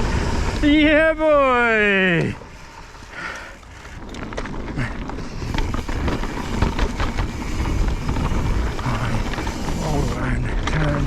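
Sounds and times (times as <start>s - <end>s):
bike rattling: 0.0s - 11.0s
tyres rolling on dirt: 0.0s - 11.0s
wind on microphone: 3.9s - 10.6s.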